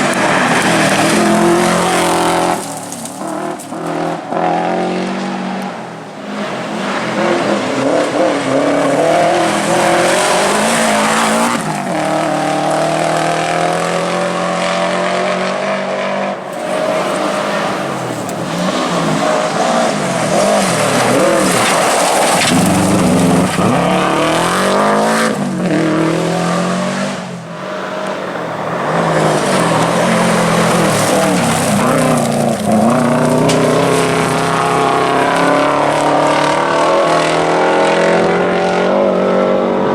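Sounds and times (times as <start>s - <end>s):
rally car engine driven hard: 0.0s - 39.9s
tyres skidding: 0.0s - 39.9s.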